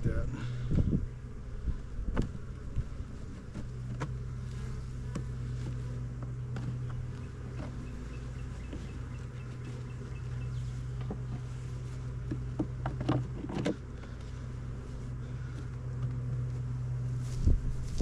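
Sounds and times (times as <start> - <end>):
honeybees buzzing: 0.0 - 18.0
knocks of wooden hive parts: 2.0 - 14.4.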